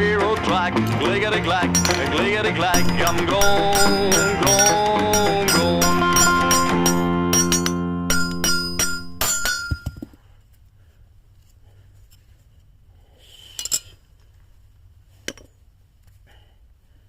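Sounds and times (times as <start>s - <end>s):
background music: 0.0s - 9.6s
metal knife clinks: 1.8s - 2.1s, 2.8s - 10.0s.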